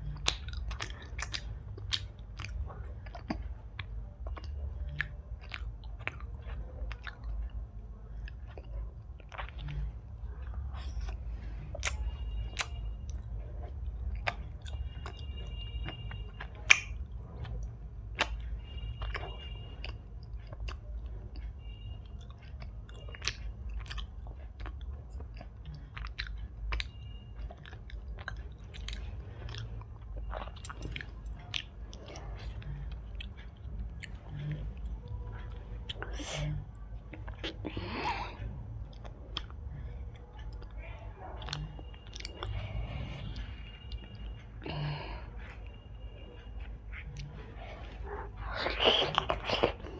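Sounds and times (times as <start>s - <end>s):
close chewing: 0.0s - 49.9s
steady low hum: 0.0s - 49.9s
mouth clicks: 16.2s - 17.6s, 48.0s - 49.9s.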